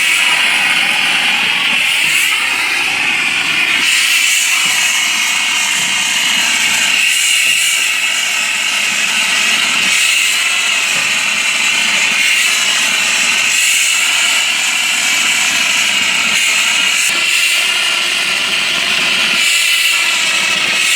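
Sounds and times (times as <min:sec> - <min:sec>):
compressed air hissing from spray nozzle: 0:00.0 - 0:17.8.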